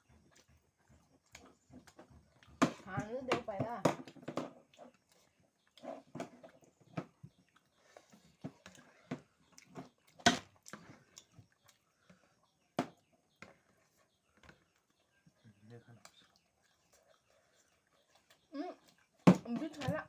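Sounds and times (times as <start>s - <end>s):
chewing and mouth smacks: 0.1s - 2.6s, 4.6s - 12.6s, 15.8s - 19.2s.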